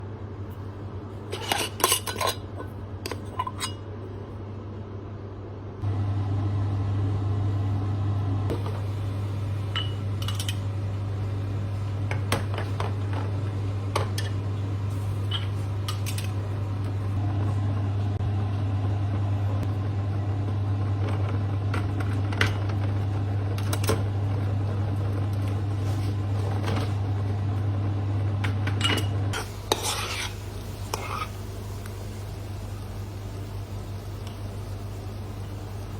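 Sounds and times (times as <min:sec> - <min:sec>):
steady low hum: 0:00.0 - 0:35.9
dishes and utensils clinking: 0:01.3 - 0:03.8, 0:09.7 - 0:10.7.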